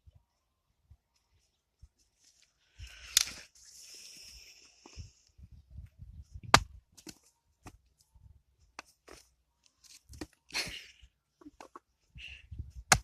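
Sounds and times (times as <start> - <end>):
axe striking firewood: 6.4 - 7.8, 12.8 - 13.0.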